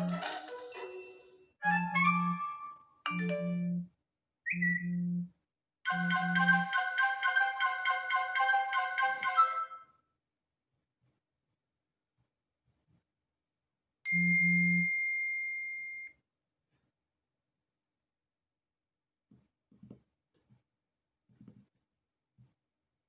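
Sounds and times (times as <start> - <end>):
marimba-like ringtone: 3.1 - 3.8, 5.9 - 9.7.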